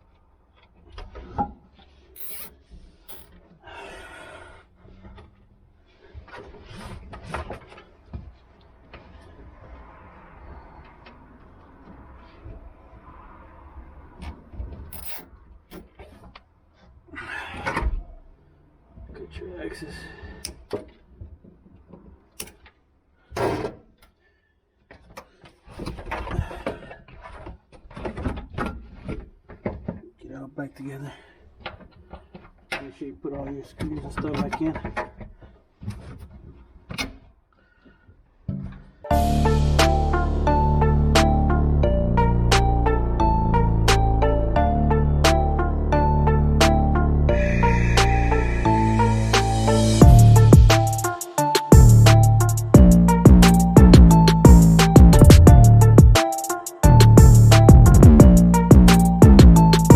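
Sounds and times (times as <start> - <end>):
scrape: 1.1 - 3.4, 5.0 - 9.8.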